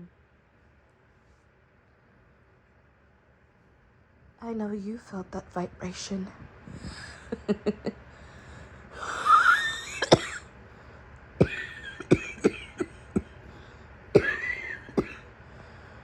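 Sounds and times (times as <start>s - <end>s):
woman coughing: 9.2s - 10.4s, 11.4s - 13.4s, 14.2s - 15.2s.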